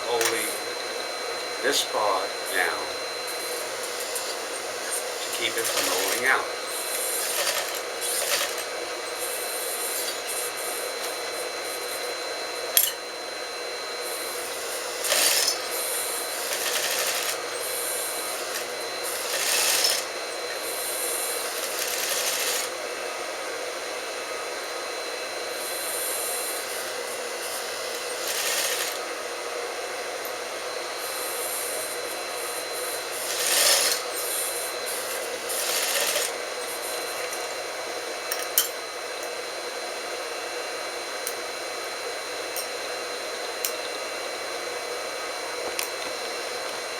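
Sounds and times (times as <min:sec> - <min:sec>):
sewing machine running: 0:00.0 - 0:13.0, 0:14.0 - 0:22.8, 0:25.5 - 0:29.1, 0:31.0 - 0:38.4.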